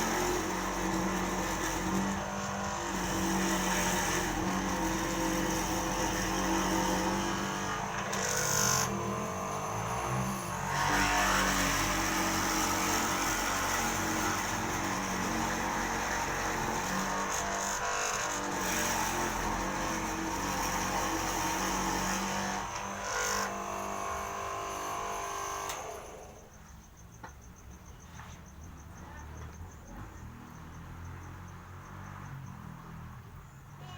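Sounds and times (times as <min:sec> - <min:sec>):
mortising machine cutting wood: 0:00.0 - 0:26.4.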